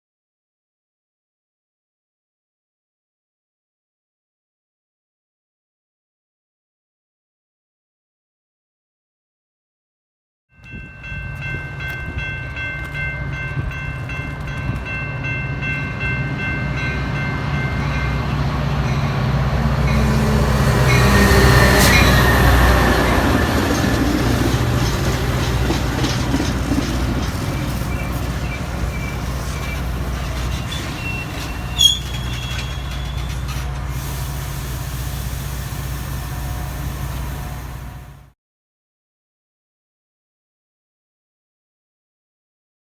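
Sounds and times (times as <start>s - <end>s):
train cars rolling: 10.6s - 38.3s
train engine rumble: 10.6s - 38.3s
sharp squeal: 27.2s - 34.6s.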